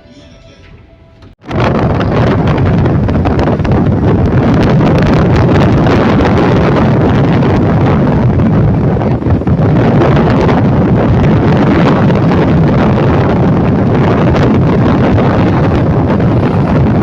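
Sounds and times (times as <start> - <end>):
wind rushing over microphone: 1.3 - 17.0.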